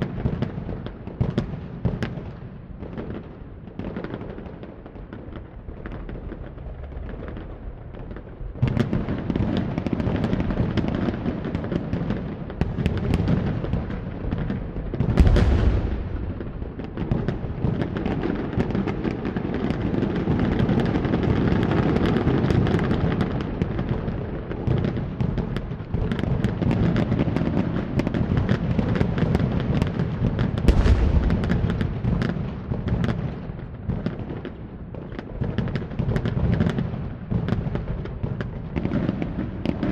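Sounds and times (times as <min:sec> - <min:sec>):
fireworks crackling: 0:00.0 - 0:39.9
heavy firework booms: 0:08.4 - 0:39.9.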